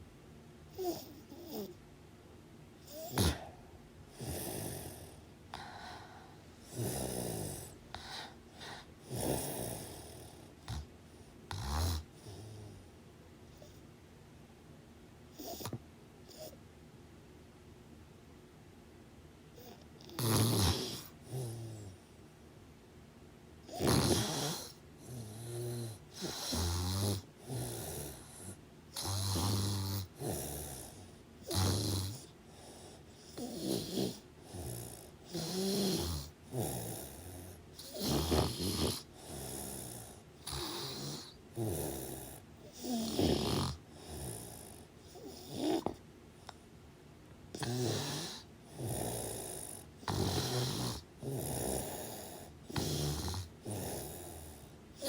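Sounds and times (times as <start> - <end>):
person snoring: 0.8 - 1.8, 2.9 - 10.9, 11.5 - 12.8, 19.6 - 22.0, 23.7 - 46.0, 47.5 - 54.7.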